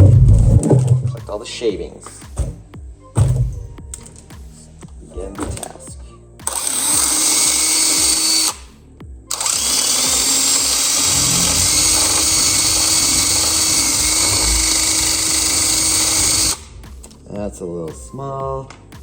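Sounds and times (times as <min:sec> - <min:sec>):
power drill boring into metal: 0:06.4 - 0:08.6, 0:09.3 - 0:16.7.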